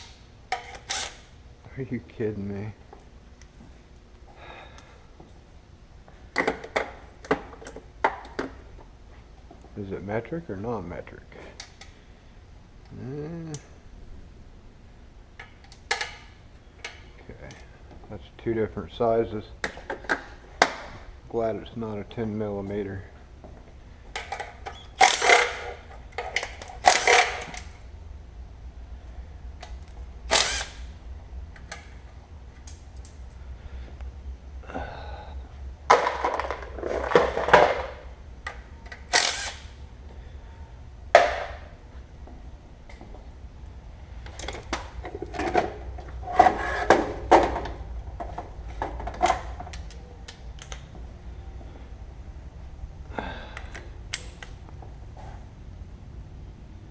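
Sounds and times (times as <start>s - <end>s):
steady low hum: 0.0s - 56.9s
metal tools clinking and clanking: 44.4s - 47.8s.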